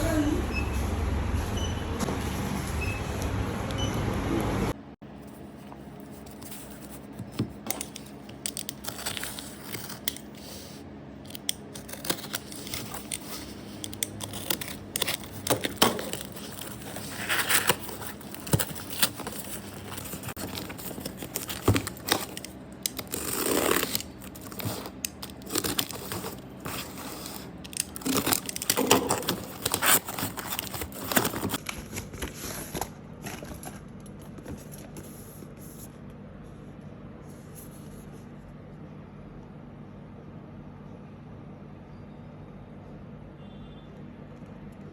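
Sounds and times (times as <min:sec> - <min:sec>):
packaging tearing and crinkling: 0:07.6 - 0:10.6, 0:11.3 - 0:33.9.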